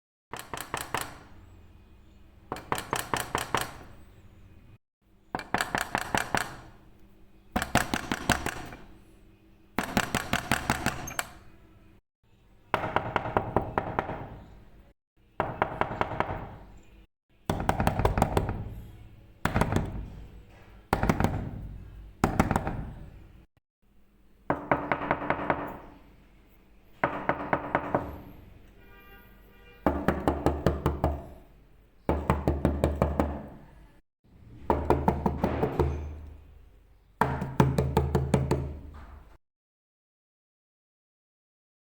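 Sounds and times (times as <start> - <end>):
rapid knocking on door: 12.8 - 14.4, 15.4 - 16.6, 17.5 - 18.7, 20.9 - 21.6, 24.5 - 25.8, 27.0 - 28.2, 29.9 - 31.3, 32.1 - 33.5, 34.7 - 36.0, 37.2 - 38.8.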